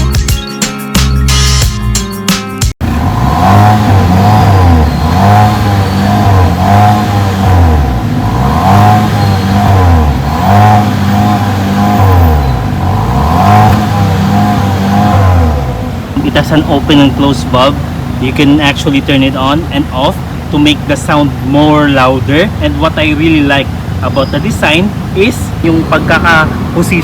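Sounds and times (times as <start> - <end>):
music: 0.0 - 2.8
car engine revving: 2.8 - 27.0.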